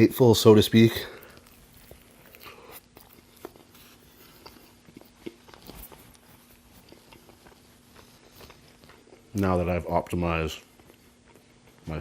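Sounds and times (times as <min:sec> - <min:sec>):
faint steady hum: 0:00.0 - 0:12.0
chewing mouth clicks and smacks: 0:01.2 - 0:09.5.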